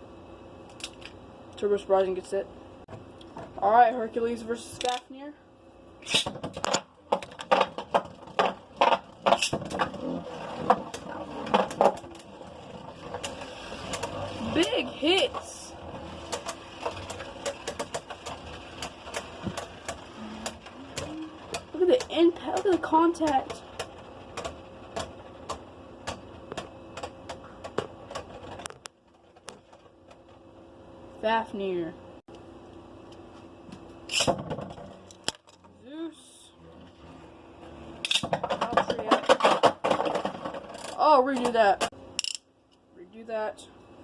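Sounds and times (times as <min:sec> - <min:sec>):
spinning tops whirring: 0:08.6 - 0:28.7.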